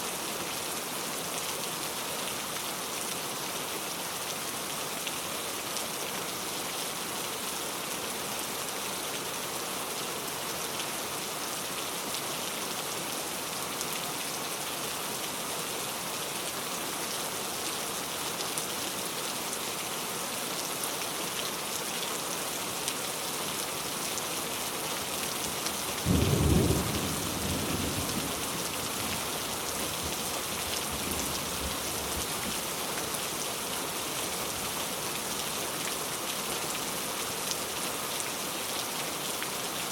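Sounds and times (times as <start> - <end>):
heavy rain falling: 0.1 - 39.9.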